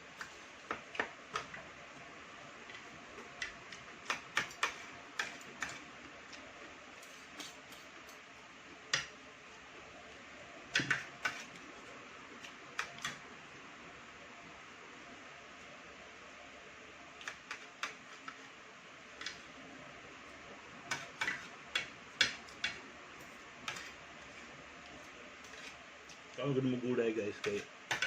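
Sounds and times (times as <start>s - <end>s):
faint steady hiss: 0.0s - 28.0s
cutlery clicks and taps: 3.4s - 5.8s, 20.9s - 22.8s, 27.4s - 28.0s.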